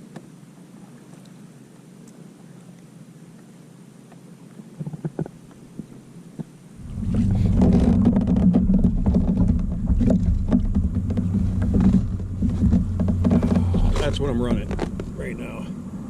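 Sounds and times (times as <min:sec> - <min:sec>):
steady low rumble with knocks: 0:06.8 - 0:16.0
light knocks on kayak hull: 0:07.5 - 0:15.2.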